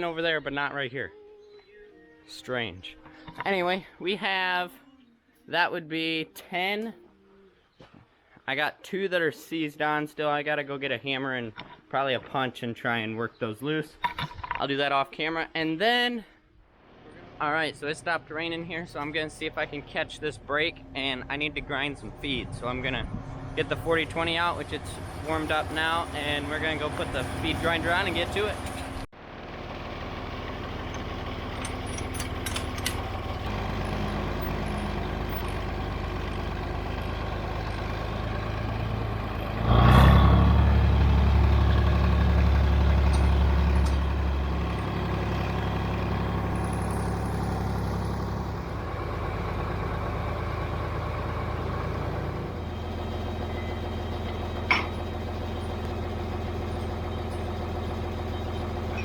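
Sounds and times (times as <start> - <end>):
tractor engine revving: 17.9 - 59.0.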